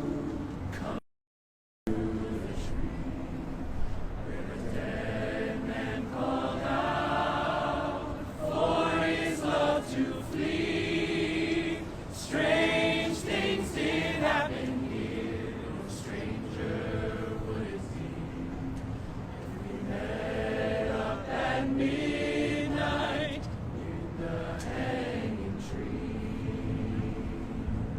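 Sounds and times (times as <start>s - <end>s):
voices singing long notes: 1.9s - 27.9s.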